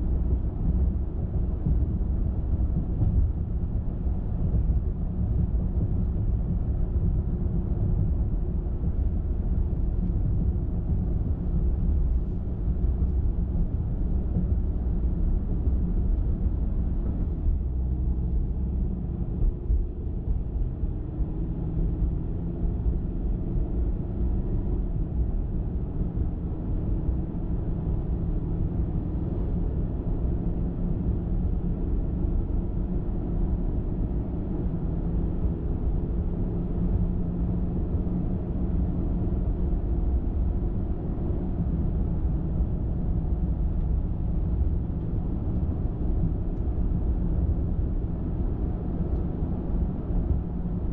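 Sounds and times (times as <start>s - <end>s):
car driving rumble: 0.0s - 50.9s.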